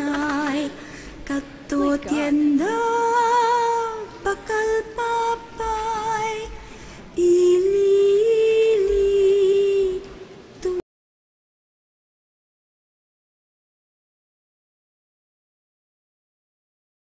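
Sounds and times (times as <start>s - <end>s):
high voice singing: 0.0s - 10.8s.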